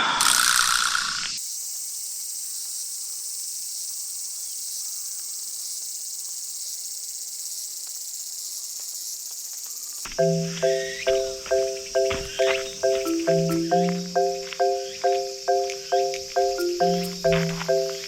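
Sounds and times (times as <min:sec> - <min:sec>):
insects droning: 0:00.4 - 0:18.0
faint bird chirps: 0:09.8 - 0:18.0
marimba music: 0:10.2 - 0:18.0.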